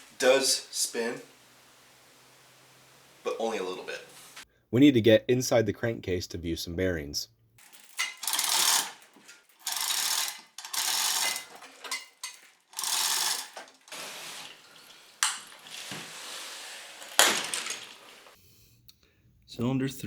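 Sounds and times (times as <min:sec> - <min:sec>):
sharp metal clanks: 0:07.6 - 0:13.7
ratchet wrench ratcheting: 0:07.6 - 0:14.0.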